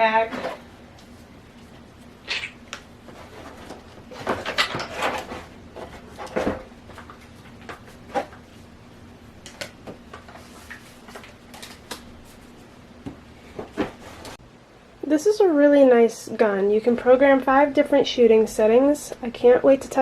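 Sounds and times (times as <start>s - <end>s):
packaging rustling and clattering: 3.0s - 8.5s.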